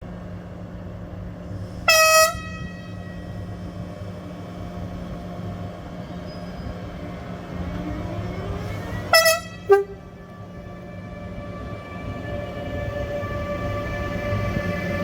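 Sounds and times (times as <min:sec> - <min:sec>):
train horn toot: 0:01.9 - 0:03.4, 0:09.1 - 0:10.1.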